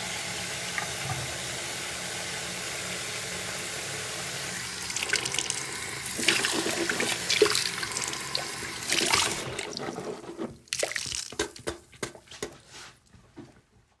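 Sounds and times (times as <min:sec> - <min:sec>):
water splashing into sink: 0:00.5 - 0:01.9, 0:02.8 - 0:12.6
water drips: 0:10.6 - 0:12.6.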